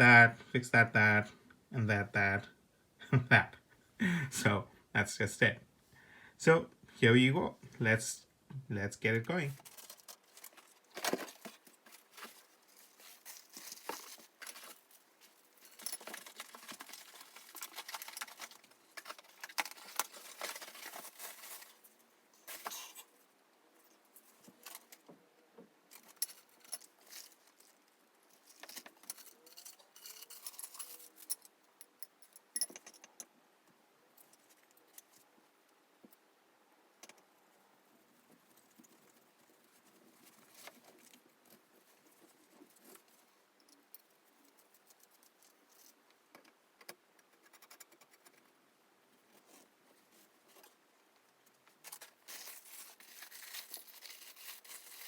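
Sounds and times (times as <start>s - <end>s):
lamp parts clicking and rattling: 9.6s - 21.8s, 25.9s - 27.8s, 28.4s - 33.3s.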